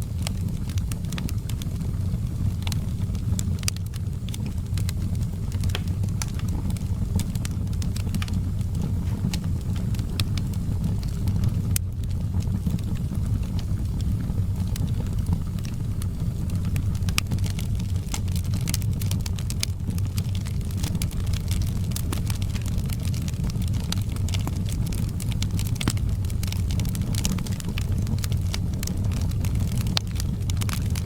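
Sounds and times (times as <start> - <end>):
fire crackling and popping: 0.0 - 31.0
fire roaring: 0.0 - 31.0.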